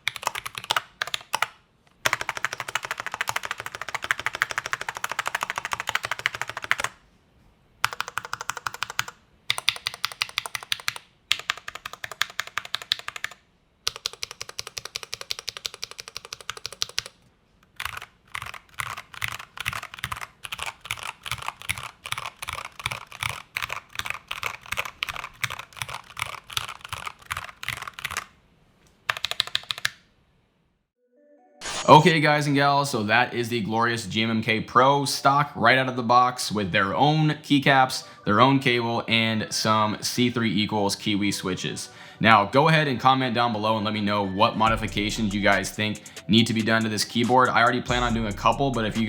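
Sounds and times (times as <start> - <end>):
mechanical keyboard typing: 0.0 - 7.0, 7.8 - 28.4, 29.1 - 30.0.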